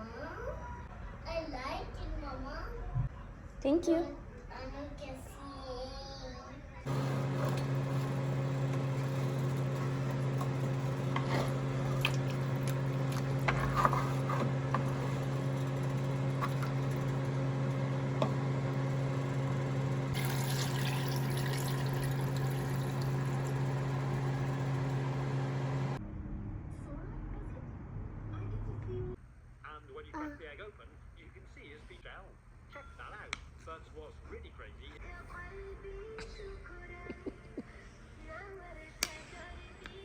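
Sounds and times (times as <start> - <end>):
low electric hum: 0.1 - 40.0
water running with hiss: 20.0 - 26.0.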